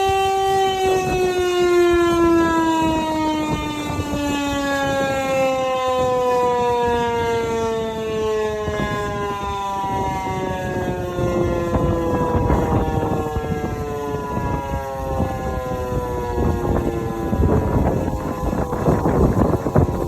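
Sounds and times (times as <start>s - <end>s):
motor siren winding down: 0.0s - 20.0s.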